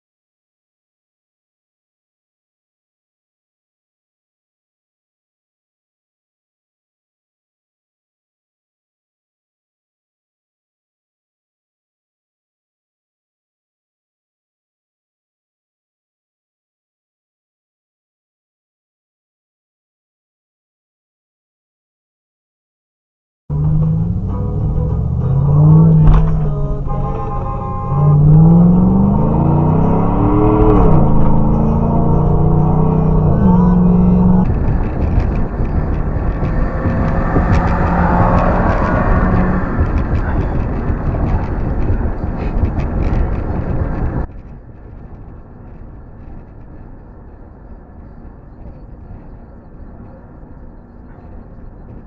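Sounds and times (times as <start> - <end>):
car engine revving: 23.5 - 44.3.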